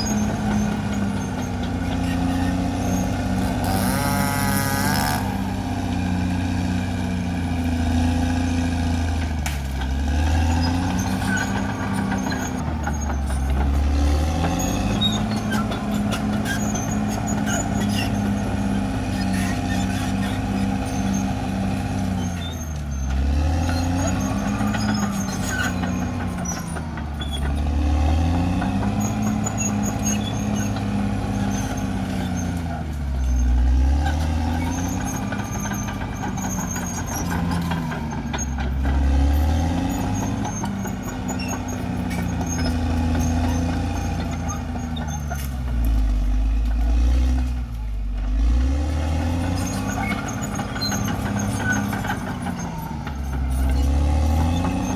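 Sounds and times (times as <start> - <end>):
faint high squeaks: 0.0 - 5.4
bulldozer diesel engine under load: 0.0 - 54.9
track clatter: 0.0 - 54.9.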